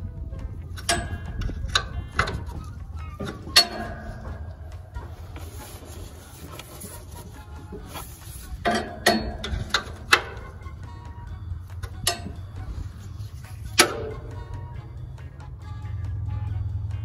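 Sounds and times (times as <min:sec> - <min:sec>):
metal tools clinking: 0:00.8 - 0:10.8, 0:11.6 - 0:14.4.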